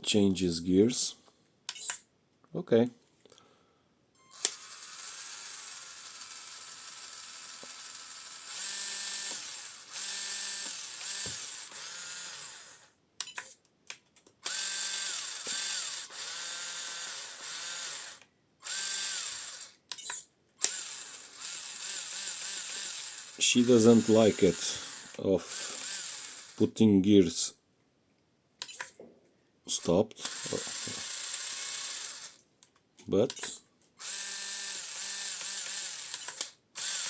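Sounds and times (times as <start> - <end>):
electric motor geared whine: 4.3 - 12.9, 20.7 - 26.6, 30.2 - 32.4.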